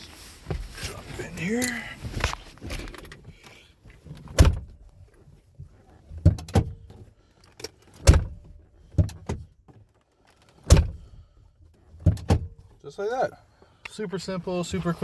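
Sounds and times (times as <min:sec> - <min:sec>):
car door latch clunking: 0:04.1 - 0:04.8, 0:06.2 - 0:07.0, 0:07.6 - 0:09.5, 0:10.6 - 0:11.1, 0:12.0 - 0:12.6.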